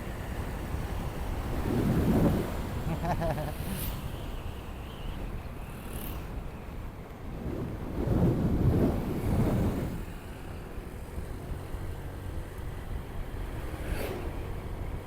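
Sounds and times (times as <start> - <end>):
wind on microphone: 1.3 - 3.0, 6.1 - 10.2.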